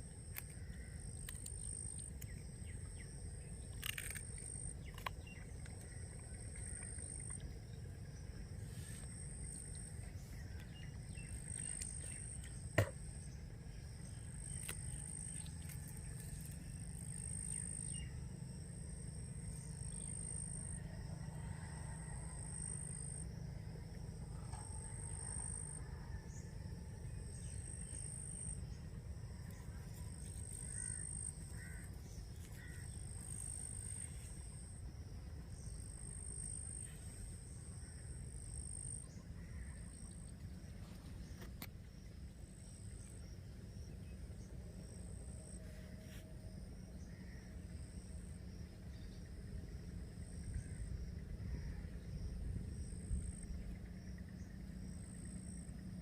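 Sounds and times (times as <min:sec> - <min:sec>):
insect buzzing call: 0:27.2 - 0:34.8.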